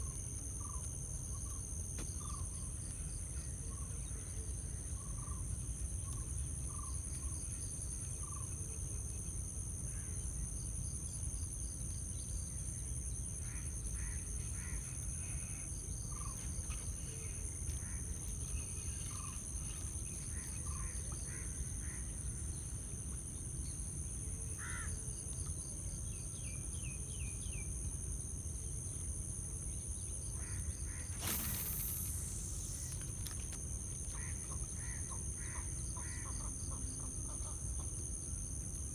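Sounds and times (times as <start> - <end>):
insects droning: 0.0 - 38.9
short bird chirps: 31.1 - 33.4.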